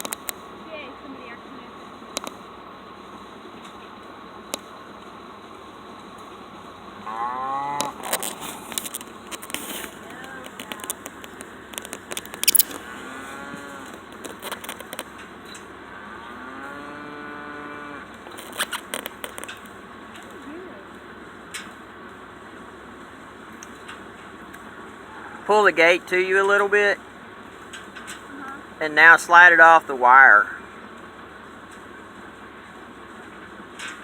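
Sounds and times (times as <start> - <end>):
cattle mooing: 7.0 - 8.8, 11.8 - 15.0, 15.8 - 18.7, 25.0 - 25.5.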